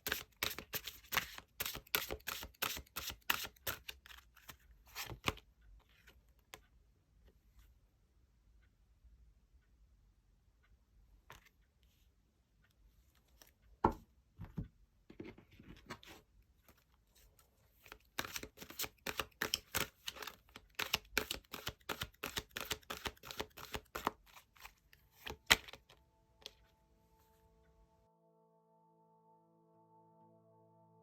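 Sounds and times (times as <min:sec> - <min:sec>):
cards shuffling and snapping: 0:00.0 - 0:05.4, 0:17.8 - 0:25.9
soft music tones: 0:25.8 - 0:31.0.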